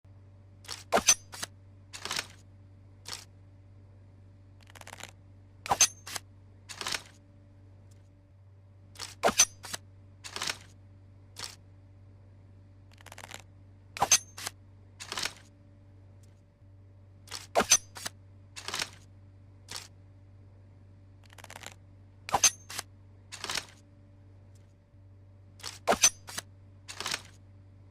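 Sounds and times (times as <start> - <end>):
blade swishing strokes: 25.9 - 26.4.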